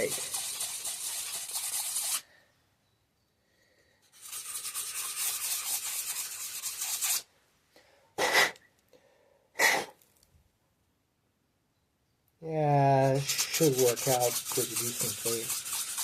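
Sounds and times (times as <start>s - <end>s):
sandpaper rubbing a surface: 0.0s - 2.2s, 4.1s - 7.3s, 13.0s - 16.0s.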